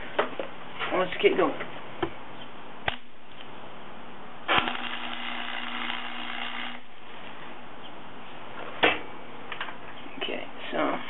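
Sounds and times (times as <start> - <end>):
welding arc crackling and buzzing: 2.8 - 3.1, 4.5 - 7.0.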